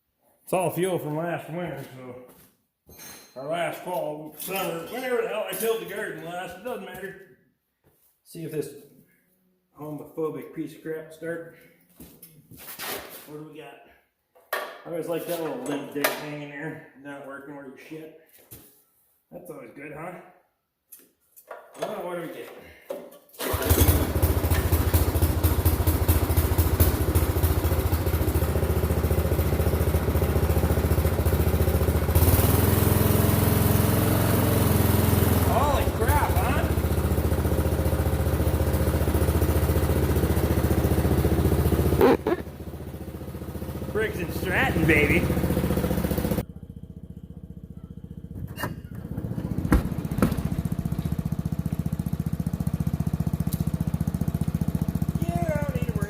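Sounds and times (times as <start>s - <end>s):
single-cylinder engine running: 23.4s - 56.0s.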